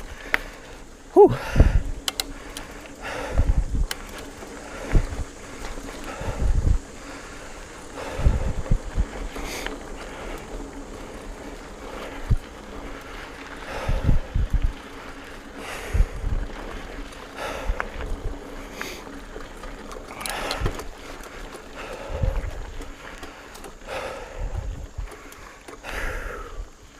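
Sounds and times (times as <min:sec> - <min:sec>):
bike tyres rolling on dirt: 0:00.0 - 0:26.9
wind buffeting microphone: 0:01.2 - 0:26.8
bike knocks and rattles: 0:01.3 - 0:26.6.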